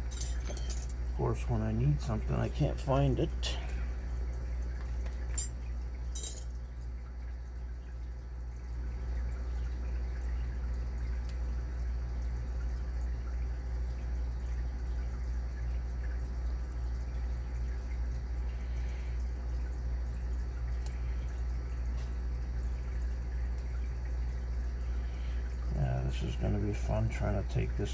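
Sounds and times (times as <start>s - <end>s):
small metal tools clinking: 0.0s - 1.0s, 4.8s - 6.6s
steady low hum: 0.0s - 27.9s.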